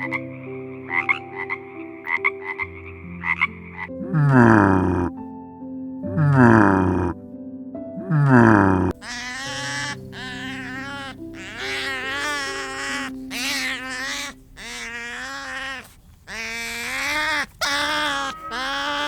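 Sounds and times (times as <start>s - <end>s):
drawn-out animal calls: 9.0s - 19.0s.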